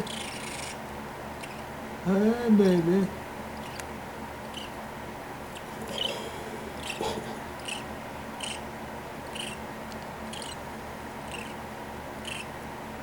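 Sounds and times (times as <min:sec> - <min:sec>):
baby bird peeping: 0:00.0 - 0:00.8, 0:03.5 - 0:04.8, 0:05.5 - 0:12.6.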